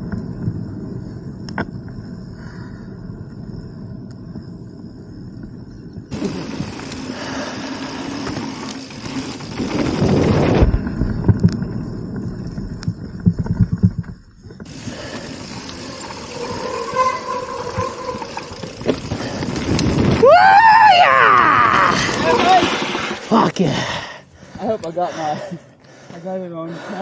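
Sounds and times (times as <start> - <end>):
bike rattling over ground: 4.4 - 23.7
wind buffeting microphone: 17.6 - 22.6.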